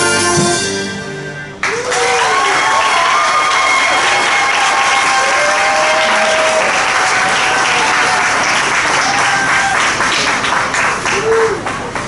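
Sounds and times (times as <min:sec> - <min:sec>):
voices cheering: 0:01.6 - 0:10.4
audience applauding: 0:01.6 - 0:12.0.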